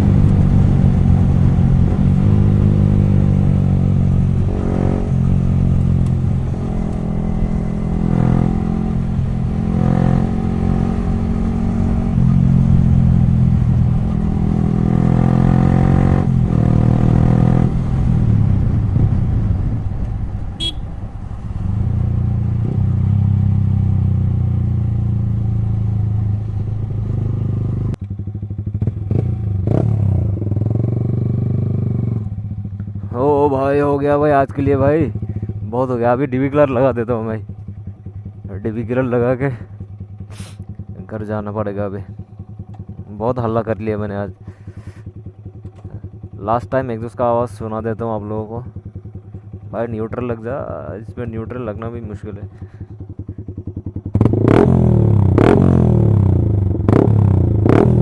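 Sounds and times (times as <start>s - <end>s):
motorcycle engine revving: 0.0s - 58.0s
exhaust cracks: 37.2s - 46.5s.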